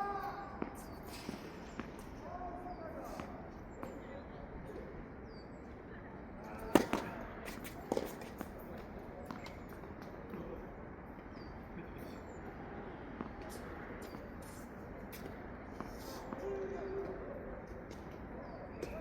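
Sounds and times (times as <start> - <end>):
ball bouncing on court: 6.7 - 7.2
tennis ball hit by racket: 6.7 - 8.5.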